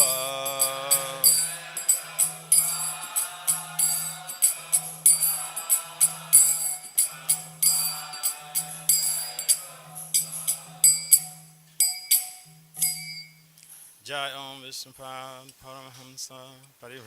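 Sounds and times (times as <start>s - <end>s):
held harmonium tones: 0.0s - 10.9s
brass hand cymbals ringing: 0.0s - 14.0s.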